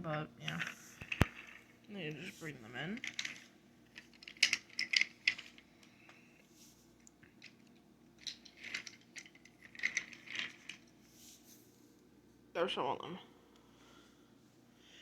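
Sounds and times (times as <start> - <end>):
wooden toy train pieces clattering: 0.4 - 6.0, 7.2 - 11.0.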